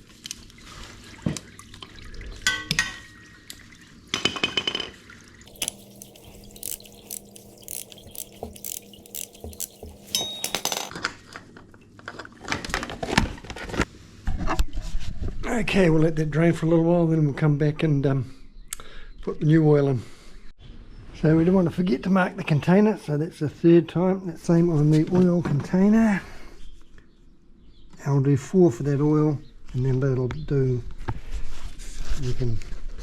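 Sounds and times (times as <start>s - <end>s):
oil draining into a container: 5.4s - 10.2s
metallic clinks of tools: 5.5s - 10.9s
short metallic rings: 9.7s - 10.9s.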